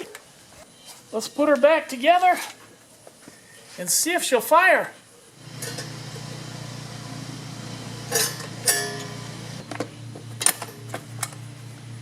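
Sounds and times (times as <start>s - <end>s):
steady low hum: 5.3s - 12.0s
metal tools clinking: 5.6s - 6.0s, 8.1s - 9.3s.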